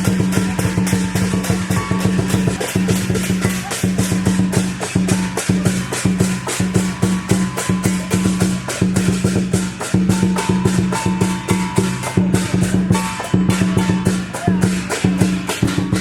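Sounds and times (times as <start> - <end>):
rapid percussion strikes: 0.0 - 16.0.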